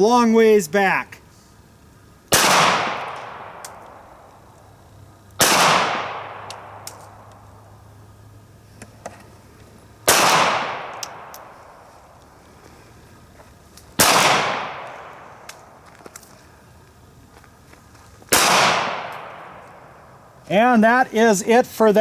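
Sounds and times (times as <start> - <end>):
pistol shots with echo: 2.3 - 4.0, 5.4 - 7.2, 10.1 - 11.5, 14.0 - 15.4, 18.3 - 19.7.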